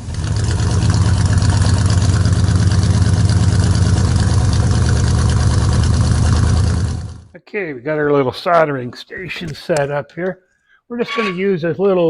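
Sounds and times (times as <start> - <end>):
engine idling: 0.0 - 7.3.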